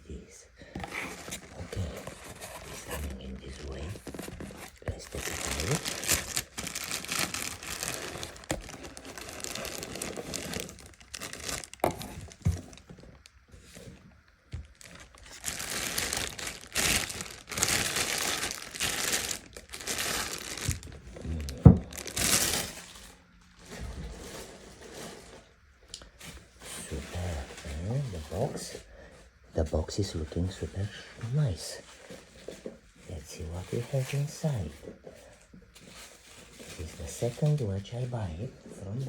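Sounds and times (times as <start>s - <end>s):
packaging crinkling and tearing: 0.8s - 25.3s.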